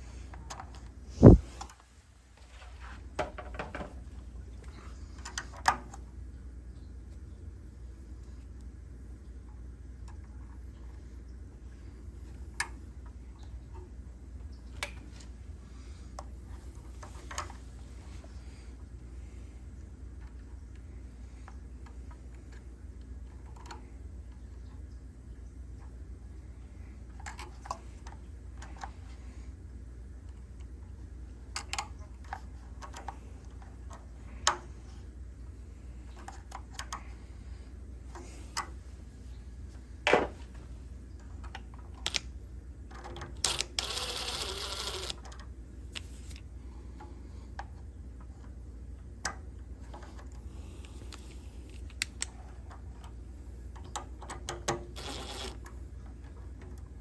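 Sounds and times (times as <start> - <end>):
steady low hum: 0.0 - 43.1.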